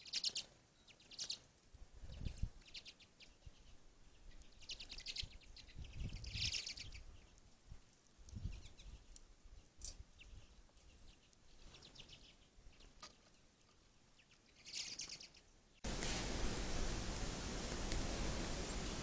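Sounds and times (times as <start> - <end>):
songbirds chirping: 0.0 - 19.0
steady hiss with low rumble: 15.2 - 19.0.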